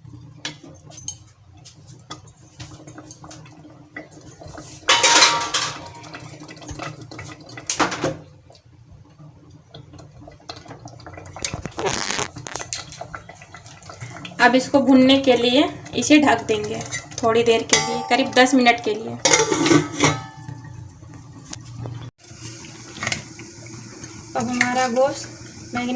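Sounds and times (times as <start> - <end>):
metal utensils clattering: 4.2 - 8.1, 16.7 - 20.6
metal spoon scraping pot: 19.2 - 20.2.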